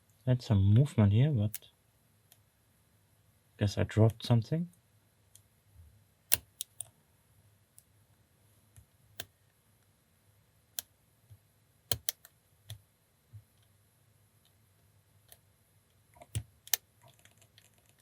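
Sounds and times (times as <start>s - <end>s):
lock pick metallic clicks: 6.3s - 6.9s, 11.9s - 12.8s.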